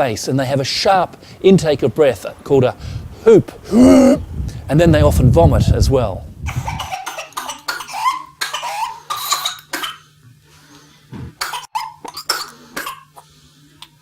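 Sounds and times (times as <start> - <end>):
whooping cough fit: 3.7 - 4.2, 6.5 - 10.1, 11.2 - 13.2.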